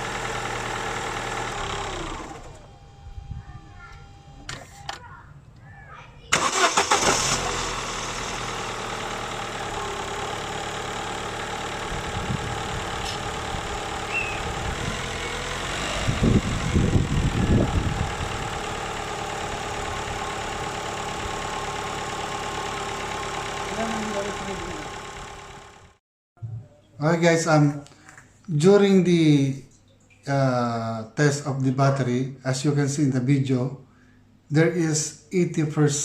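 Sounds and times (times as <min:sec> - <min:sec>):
car engine cranking: 0:00.0 - 0:02.7, 0:06.3 - 0:25.9
car engine idling: 0:00.0 - 0:02.9, 0:06.3 - 0:26.0.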